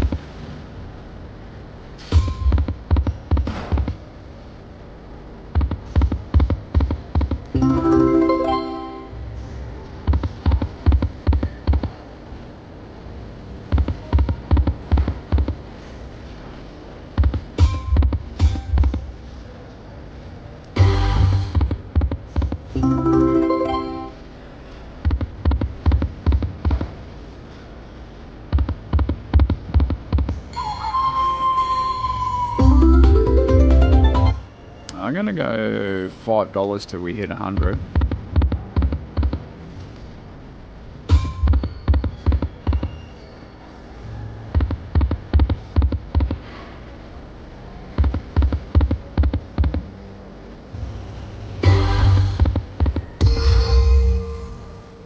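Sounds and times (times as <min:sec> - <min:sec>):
low thumps: 0:05.5 - 0:07.5, 0:20.8 - 0:22.7, 0:37.6 - 0:39.4, 0:44.5 - 0:46.5, 0:51.6 - 0:53.5
short mallet-like notes: 0:07.6 - 0:09.2
slot machine chime: 0:07.6 - 0:09.2, 0:22.8 - 0:24.3, 0:32.6 - 0:34.5.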